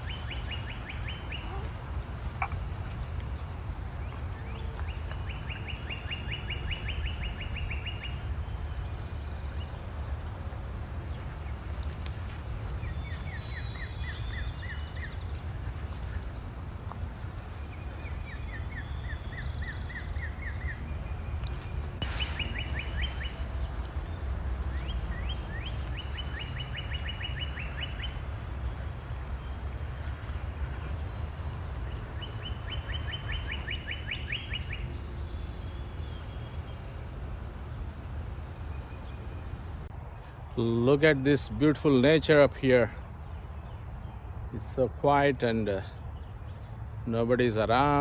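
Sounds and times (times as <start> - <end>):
songbirds trilling: 0.0 - 39.9
steady low rumble: 6.7 - 39.9.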